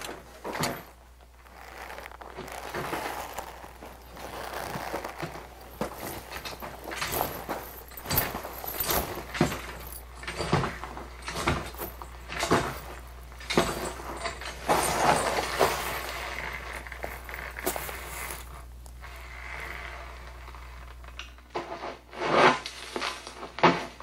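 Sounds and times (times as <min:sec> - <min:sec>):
sharp knocks and clatters: 0:05.2 - 0:16.0.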